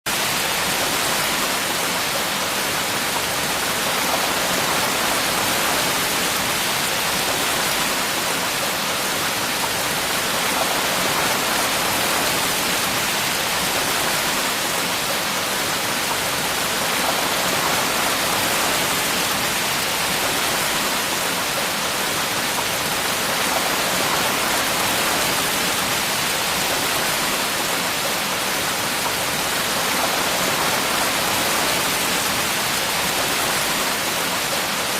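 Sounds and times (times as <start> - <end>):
steady rain falling: 0.1 - 34.9.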